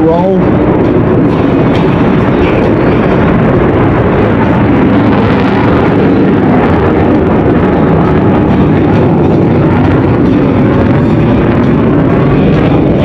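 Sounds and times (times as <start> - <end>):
jet engine roar: 0.0 - 13.0.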